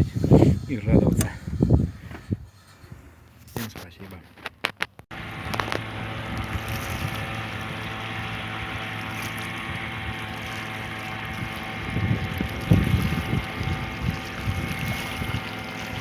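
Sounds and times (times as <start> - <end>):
wind buffeting microphone: 0.0 - 3.2, 5.1 - 16.0
outboard motor running: 5.1 - 16.0.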